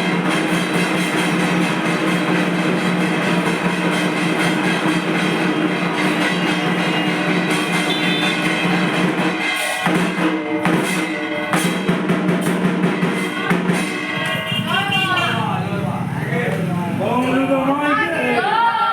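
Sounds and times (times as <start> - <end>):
fast dense drumming: 0.0 - 18.6
steady ringing tones: 1.5 - 10.0, 12.6 - 17.7.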